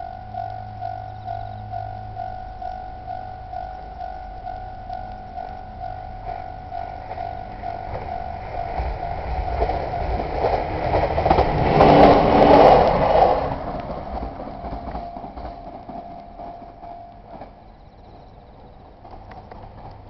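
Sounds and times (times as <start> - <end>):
level crossing warning bell: 0.0 - 18.9
train wheels on rails: 0.0 - 20.0.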